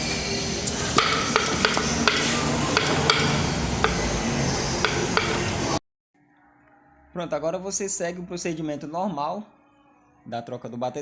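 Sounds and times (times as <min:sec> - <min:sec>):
tools clattering on metal bolts: 0:01.0 - 0:04.0.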